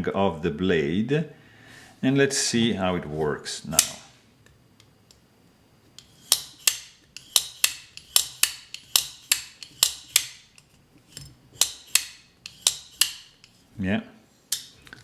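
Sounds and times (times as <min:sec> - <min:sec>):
folding knife clicking open and shut: 0:03.7 - 0:04.0, 0:06.0 - 0:10.4, 0:11.6 - 0:13.6.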